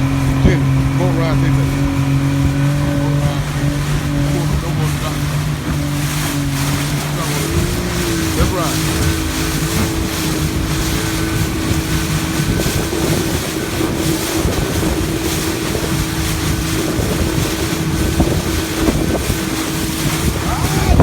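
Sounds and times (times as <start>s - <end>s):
motorboat engine droning: 0.0s - 21.0s
wind buffeting microphone: 0.0s - 21.0s.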